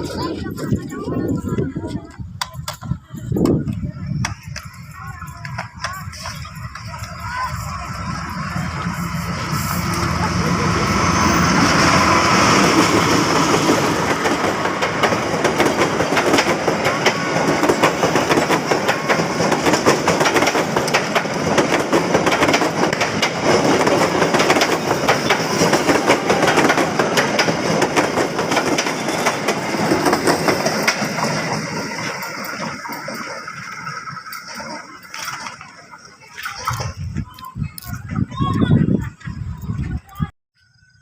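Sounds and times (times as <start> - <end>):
train wheels clattering over rails: 5.4 - 35.4.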